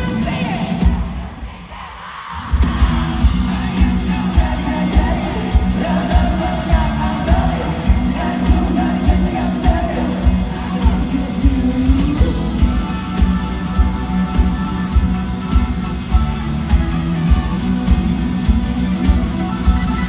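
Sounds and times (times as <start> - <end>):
live rock band with singing: 0.0 - 20.0
pounding drum beat: 0.0 - 20.0.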